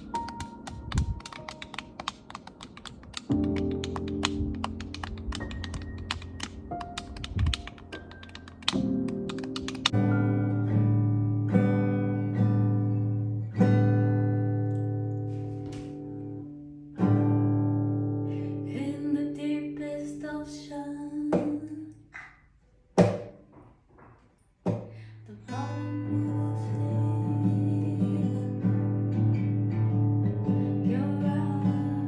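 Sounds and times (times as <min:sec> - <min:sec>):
person singing: 0:25.3 - 0:28.7, 0:30.8 - 0:32.0.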